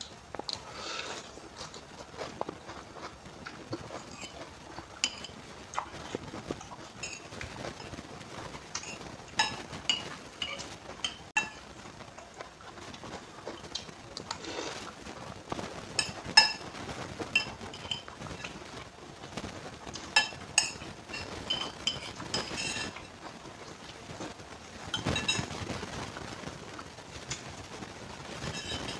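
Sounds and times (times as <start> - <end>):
metal cutlery tapping a dish: 8.8 - 11.6, 16.0 - 16.6, 28.4 - 28.9.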